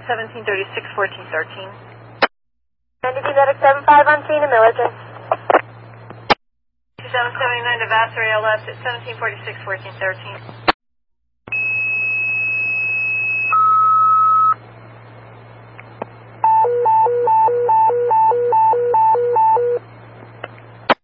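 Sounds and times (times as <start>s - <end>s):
two-tone pager tone: 11.5s - 14.6s, 16.4s - 19.8s.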